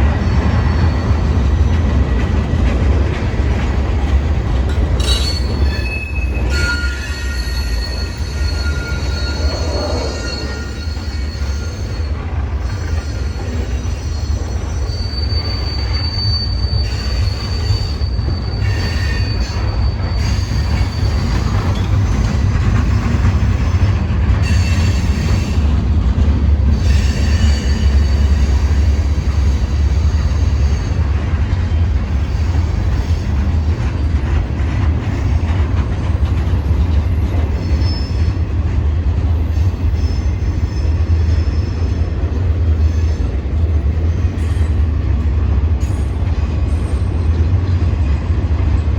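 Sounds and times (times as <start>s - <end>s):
train wheels rumbling: 0.0s - 48.9s
high wheel squeal: 0.1s - 1.7s, 5.0s - 22.6s, 23.4s - 25.7s, 26.7s - 31.1s, 37.5s - 38.4s, 39.4s - 42.1s.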